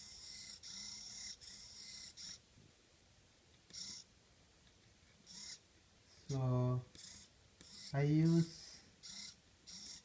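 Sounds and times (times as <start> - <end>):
servo whirring: 0.0 - 2.4, 3.7 - 4.1, 5.3 - 5.6, 6.9 - 10.0.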